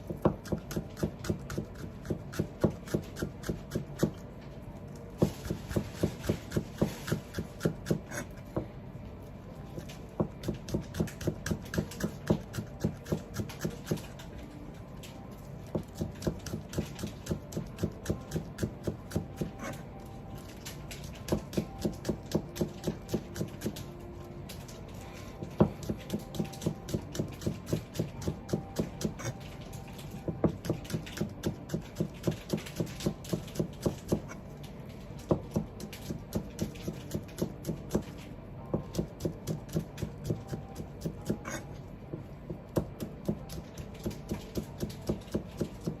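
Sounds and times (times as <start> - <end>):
knife chopping on cutting board: 0.0 - 4.2, 5.2 - 8.7, 9.8 - 14.1, 38.7 - 46.0.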